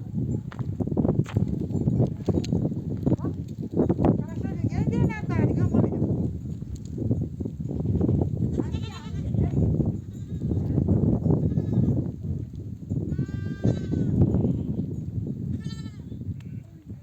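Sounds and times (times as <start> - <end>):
sheep bleating: 8.5 - 9.4, 11.4 - 12.0, 13.1 - 14.2.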